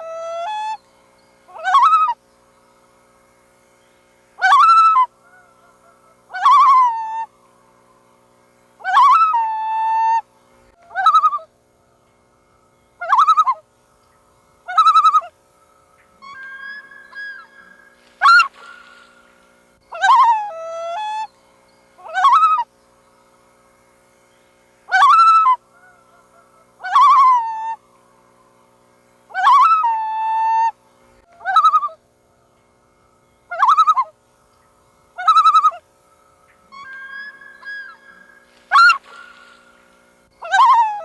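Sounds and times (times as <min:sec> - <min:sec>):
loon calling: 0:01.5 - 0:02.2, 0:04.4 - 0:07.4, 0:08.8 - 0:11.6, 0:13.0 - 0:13.7, 0:14.6 - 0:21.3, 0:22.0 - 0:22.7, 0:24.9 - 0:27.8, 0:29.3 - 0:32.4, 0:33.4 - 0:34.2, 0:35.1 - 0:35.9, 0:36.5 - 0:41.0.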